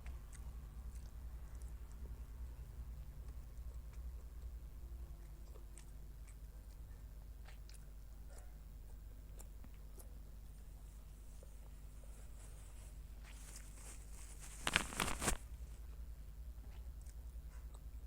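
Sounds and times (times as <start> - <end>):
person chewing food: 0.0 - 12.1, 16.6 - 18.0
faint low hum: 0.0 - 18.0
soft mouth clicks: 5.1 - 10.2.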